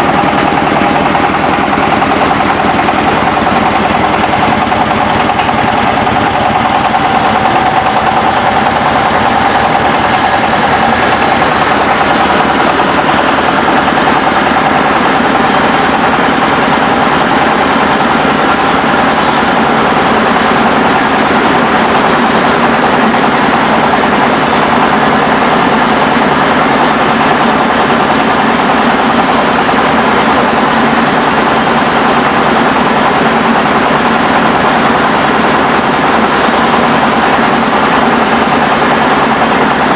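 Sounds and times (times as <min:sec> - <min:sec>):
rice mill machine running: 0:00.0 - 0:39.9.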